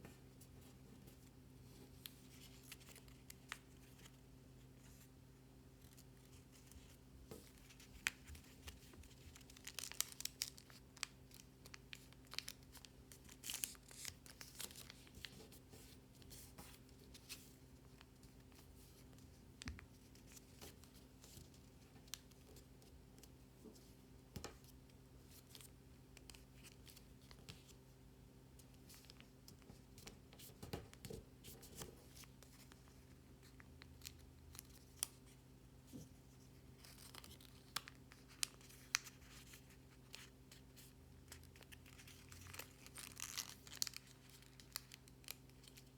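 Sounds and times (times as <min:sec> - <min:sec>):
faint steady hum: 0:00.0 - 0:45.9
paper rustling and crinkling: 0:05.8 - 0:22.4, 0:35.9 - 0:45.9.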